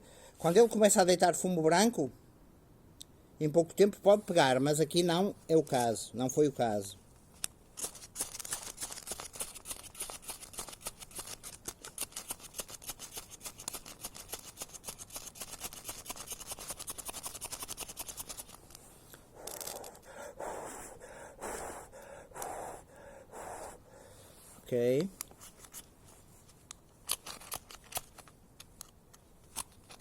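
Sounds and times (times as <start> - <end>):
rustling strokes: 7.2 - 22.8.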